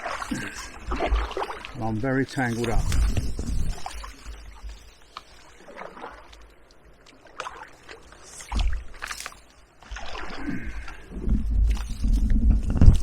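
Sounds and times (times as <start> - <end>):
water splashes: 0.0 - 13.0.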